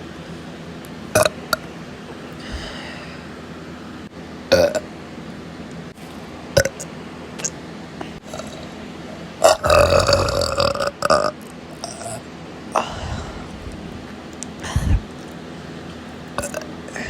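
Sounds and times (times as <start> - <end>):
person burping: 1.2 - 1.4, 4.5 - 4.8, 6.6 - 6.8, 8.2 - 8.7, 9.4 - 12.2, 16.4 - 17.0.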